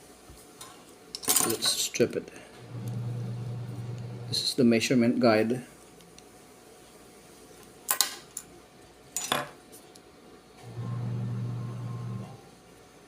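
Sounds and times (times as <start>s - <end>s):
steady low hum: 2.5s - 4.5s.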